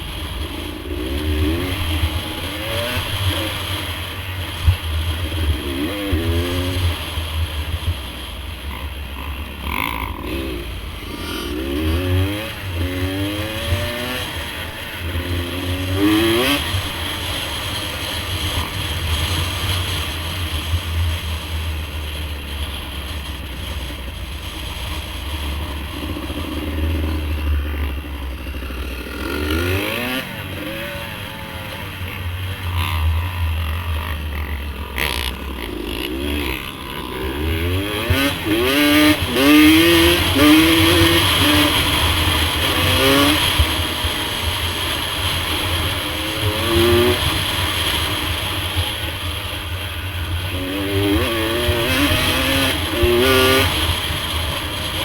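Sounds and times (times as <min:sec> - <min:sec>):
off-road vehicle engine revving: 0:00.0 - 0:20.2, 0:22.5 - 0:55.0.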